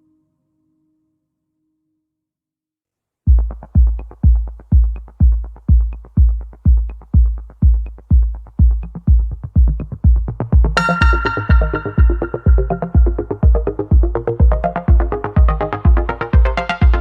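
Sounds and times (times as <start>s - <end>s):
electronic music with drum-machine kick: 3.3s - 17.0s.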